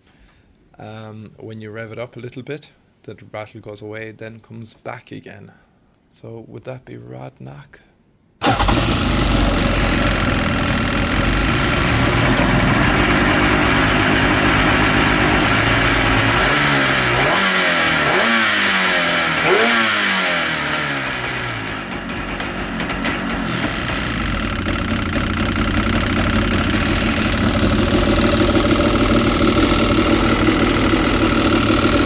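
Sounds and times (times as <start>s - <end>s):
jet ski engine idling with rattle: 8.4s - 17.2s, 20.7s - 32.0s.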